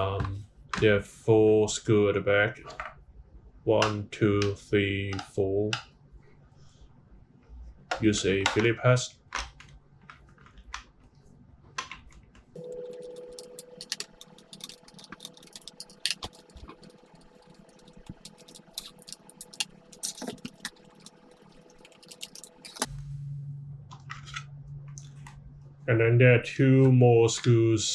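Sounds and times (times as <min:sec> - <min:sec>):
screwdriver and plastic clicks: 0:12.6 - 0:22.9
steady hum: 0:12.6 - 0:26.7.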